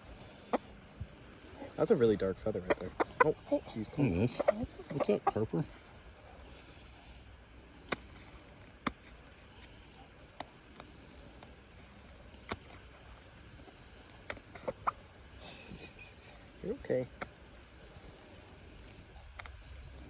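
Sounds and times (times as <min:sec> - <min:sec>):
scissors snipping feathers: 0:07.8 - 0:13.2, 0:14.0 - 0:14.9.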